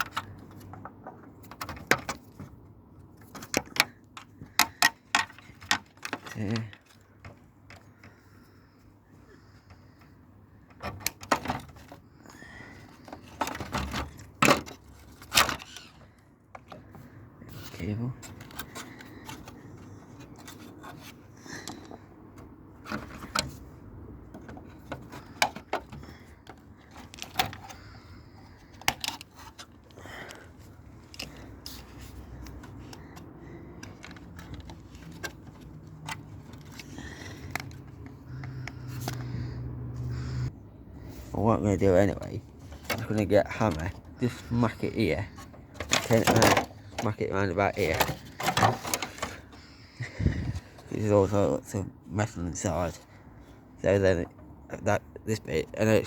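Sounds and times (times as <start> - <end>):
metal and plastic parts clattering: 0.0 - 8.3, 9.6 - 39.5, 42.0 - 51.4
light scrapes of plastic and metal: 9.4 - 40.2, 42.0 - 51.5.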